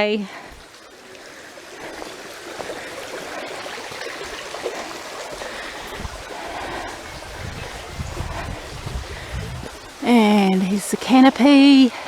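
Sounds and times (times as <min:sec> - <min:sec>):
stream water rushing: 0:00.0 - 0:12.0
low rumbling: 0:05.9 - 0:10.4.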